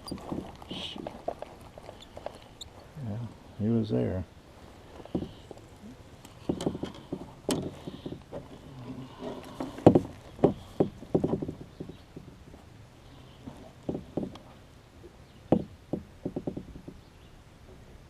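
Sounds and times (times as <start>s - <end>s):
fishing gear knocking against boat hull: 6.4s - 8.6s, 9.5s - 12.4s, 13.8s - 14.5s, 15.5s - 17.0s.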